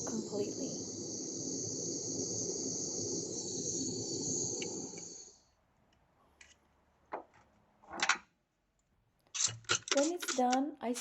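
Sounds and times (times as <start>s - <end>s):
torch flame hissing: 0.0s - 5.5s.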